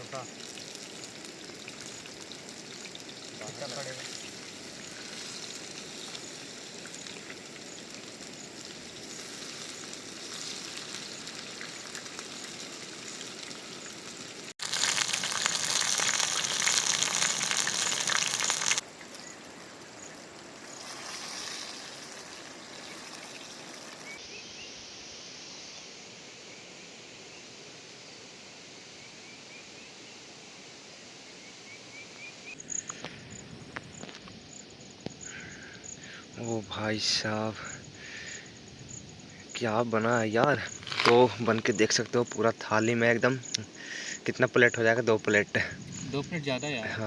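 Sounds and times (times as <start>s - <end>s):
rain: 0.0s - 24.2s
rushing water: 9.7s - 24.2s.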